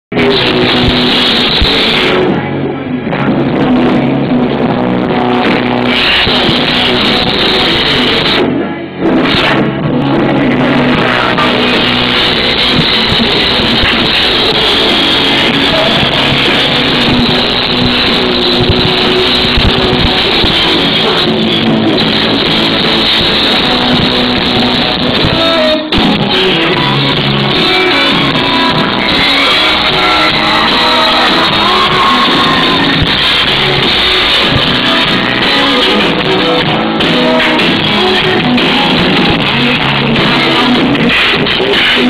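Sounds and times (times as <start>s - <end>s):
live rock band playing: 0.1s - 42.0s.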